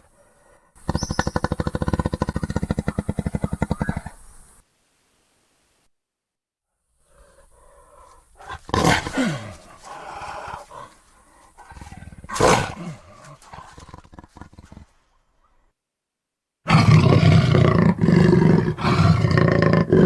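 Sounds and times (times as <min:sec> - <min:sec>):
rough growling: 0:00.0 - 0:04.4, 0:07.0 - 0:15.7, 0:16.7 - 0:20.0
jaguar roaring: 0:00.8 - 0:04.3, 0:07.1 - 0:11.0, 0:11.6 - 0:15.0, 0:16.7 - 0:20.0.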